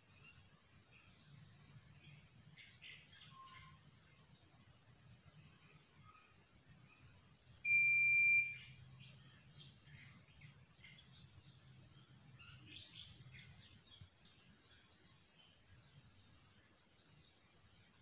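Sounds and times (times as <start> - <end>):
faint bird chirps: 0.0 - 18.0
high-pitched electronic beep: 7.7 - 8.6.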